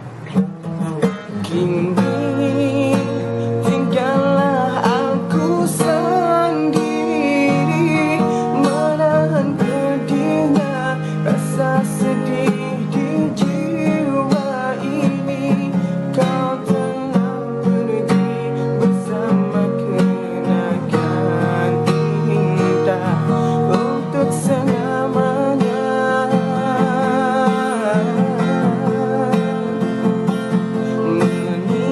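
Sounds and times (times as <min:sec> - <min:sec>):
acoustic guitar strummed and plucked: 0:00.0 - 0:31.9.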